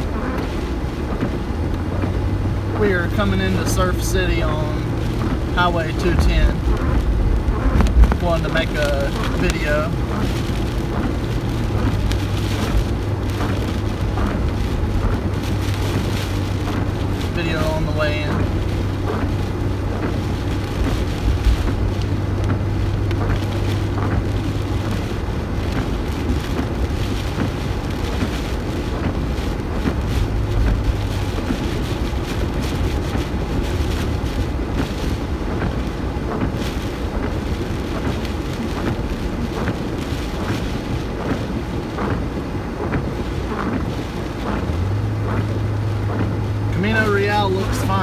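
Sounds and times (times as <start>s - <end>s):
hurricane wind: 0.0s - 48.0s
rain pattering on car: 0.0s - 48.0s
road and engine rumble: 0.0s - 48.0s
low hum: 1.6s - 19.4s.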